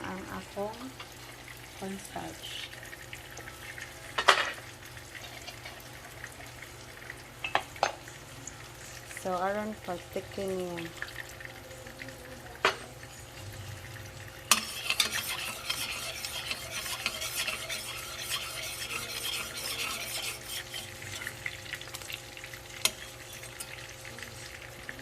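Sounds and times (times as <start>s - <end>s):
spoon stirring and scraping pan: 5.2s - 5.9s, 14.4s - 24.6s.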